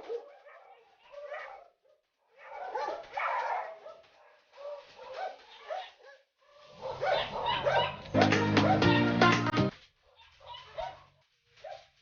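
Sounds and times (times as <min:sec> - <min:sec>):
dog whining and yelping: 0:04.6 - 0:08.1.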